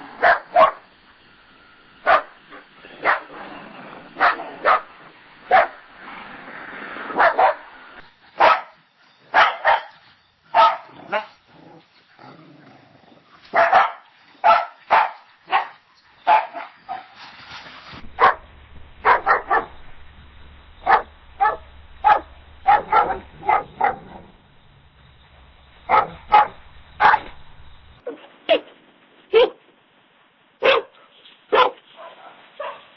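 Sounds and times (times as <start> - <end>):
low hum: 0.0 - 9.1, 17.2 - 28.0
dogs barking: 0.2 - 0.9, 2.0 - 3.4, 4.2 - 5.9, 7.1 - 7.7, 8.4 - 11.4, 13.5 - 17.2, 18.1 - 19.8, 20.8 - 24.4, 25.8 - 27.4, 30.6 - 32.9.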